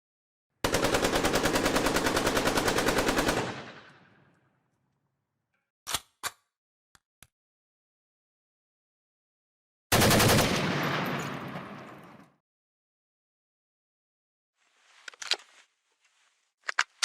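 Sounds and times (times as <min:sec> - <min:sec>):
assault rifle automatic fire: 0:00.6 - 0:04.1, 0:09.9 - 0:11.9.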